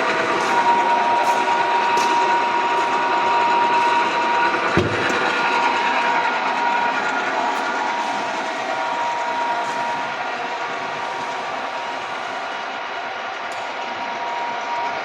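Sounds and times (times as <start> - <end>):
milling machine whining: 0.0 - 15.0.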